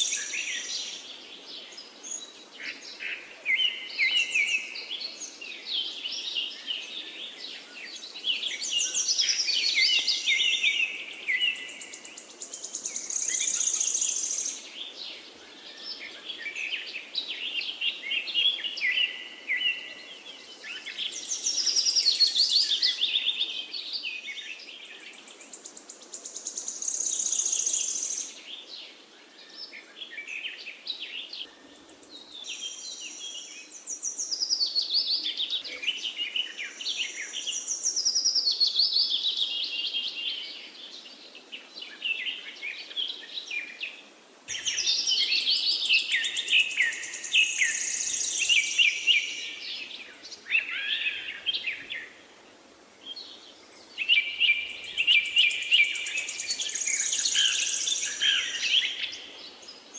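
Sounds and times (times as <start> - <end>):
faint steady background hiss: 0.0 - 59.9
songbirds chirping and trilling: 0.0 - 59.9.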